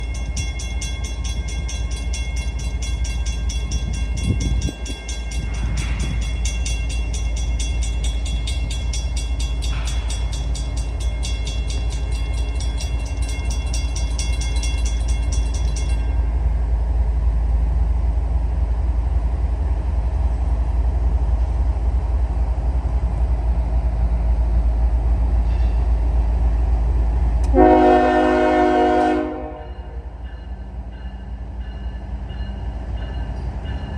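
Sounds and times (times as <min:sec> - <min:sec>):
rapid high-pitched ringing: 0:00.0 - 0:16.2
freight train low rumble: 0:00.0 - 0:33.9
locomotive air horn blast: 0:27.5 - 0:30.0.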